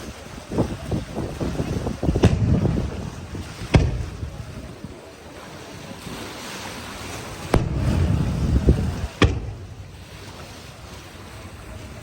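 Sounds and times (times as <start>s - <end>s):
rolling low rumble: 0.7s - 5.1s, 7.0s - 12.0s
fireworks bangs: 1.4s - 4.8s, 7.3s - 10.6s.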